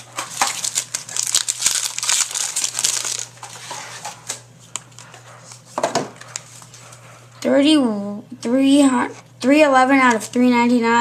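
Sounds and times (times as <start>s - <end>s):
card pack wrapper crinkling: 0.0s - 5.0s.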